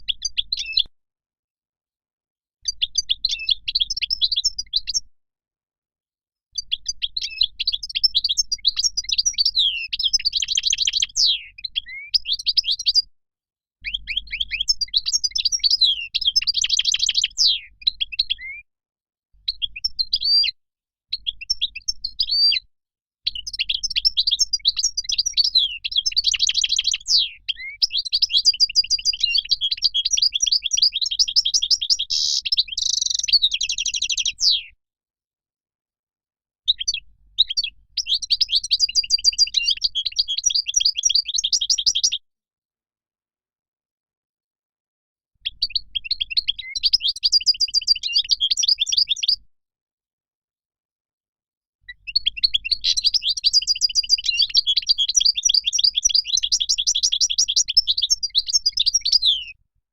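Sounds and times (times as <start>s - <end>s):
goldfinch twittering song: 6.6s - 13.1s, 13.8s - 18.5s, 23.3s - 34.6s, 36.7s - 42.2s, 45.4s - 49.4s, 51.9s - 59.6s.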